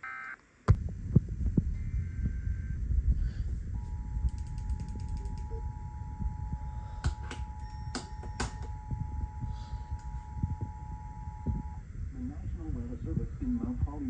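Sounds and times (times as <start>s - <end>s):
low rumble: 0.7s - 14.0s
sharp clicks: 4.2s - 5.6s.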